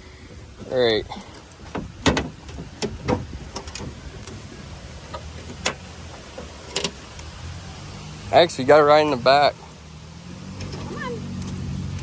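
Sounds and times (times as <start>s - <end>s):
sharp clicks and knocks: 0.0s - 7.4s
golf cart engine humming: 0.0s - 12.0s.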